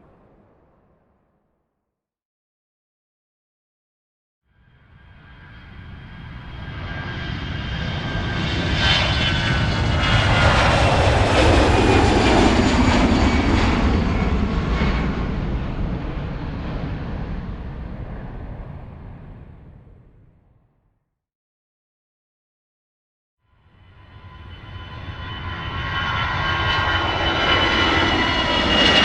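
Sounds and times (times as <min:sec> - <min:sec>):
airplane flying past: 0:04.6 - 0:20.9, 0:23.5 - 0:29.0.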